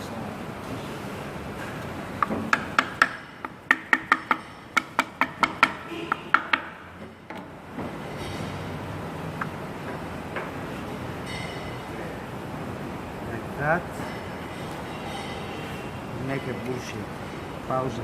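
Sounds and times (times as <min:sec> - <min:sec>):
metallic clicks on engine parts: 0:01.8 - 0:07.5.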